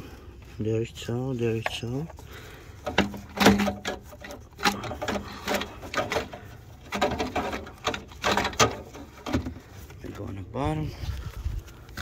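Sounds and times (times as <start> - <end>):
car parts and tools clattering: 1.4 - 10.1.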